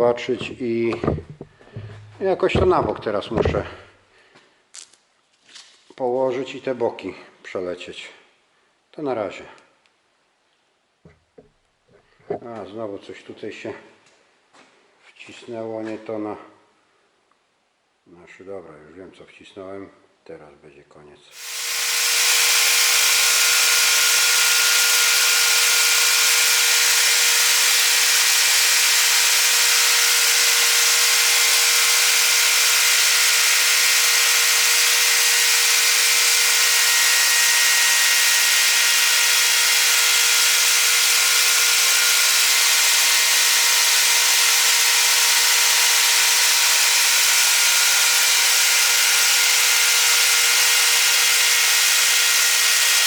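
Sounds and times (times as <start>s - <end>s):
milling machine cutting metal: 21.4s - 53.0s.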